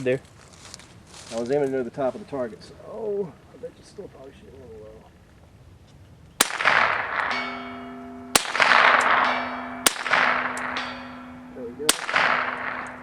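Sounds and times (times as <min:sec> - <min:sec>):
rifle shots with echo: 0:06.4 - 0:13.0
steel target ringing: 0:06.4 - 0:13.0.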